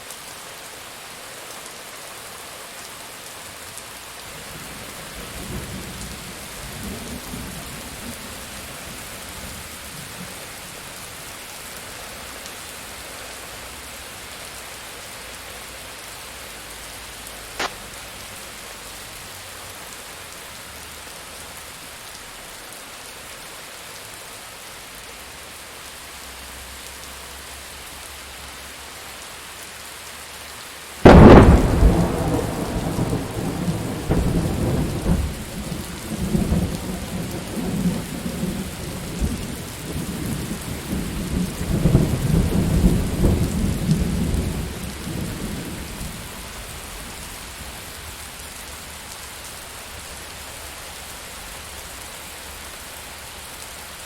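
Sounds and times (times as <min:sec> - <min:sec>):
steady rain: 0:00.0 - 0:54.0
thunder clap and rumble: 0:31.0 - 0:46.2.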